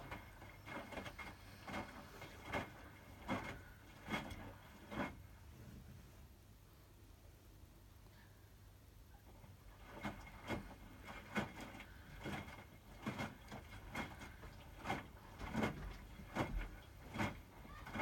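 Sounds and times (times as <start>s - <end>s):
water sloshing in drum: 0.0s - 5.5s, 9.3s - 18.0s
washing machine tumbling laundry: 0.0s - 18.0s.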